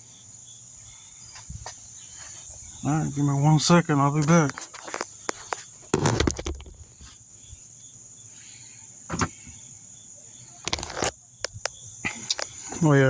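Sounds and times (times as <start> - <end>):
sharp knocks and clicks: 4.5 - 6.8.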